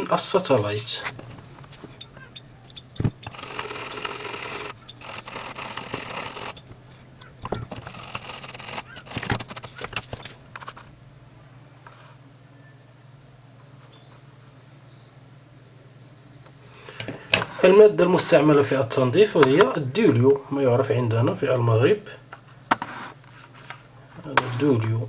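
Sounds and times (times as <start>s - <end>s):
rushing scratchy noise: 0.0s - 11.0s
faint steady hum: 0.0s - 25.0s
sharp knocks: 1.0s - 10.9s.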